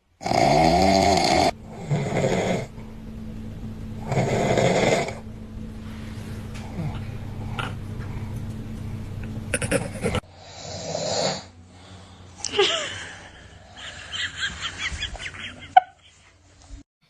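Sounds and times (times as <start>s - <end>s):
man snoring: 0.2s - 2.8s, 4.0s - 5.2s, 6.6s - 7.8s, 9.5s - 11.6s.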